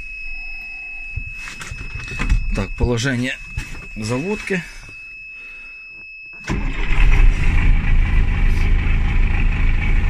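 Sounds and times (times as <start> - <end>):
thin high tone: 0.0 - 6.0
diesel tractor engine starting: 6.4 - 10.0.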